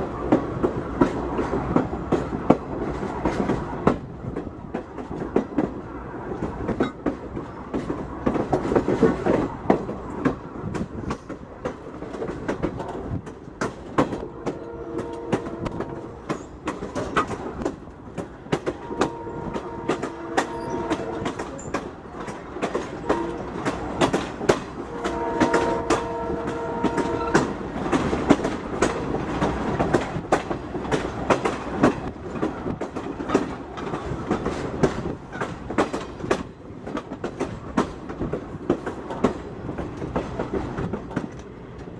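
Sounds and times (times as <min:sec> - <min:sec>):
train wheels clattering over joints: 0:00.0 - 0:41.9
locomotive air horn blasts: 0:14.2 - 0:16.2, 0:18.8 - 0:21.4, 0:23.0 - 0:23.6, 0:24.8 - 0:27.5.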